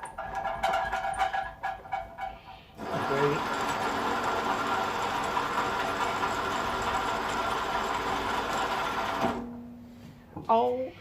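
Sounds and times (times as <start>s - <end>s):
lathe motor and gears whirring: 2.8s - 9.3s.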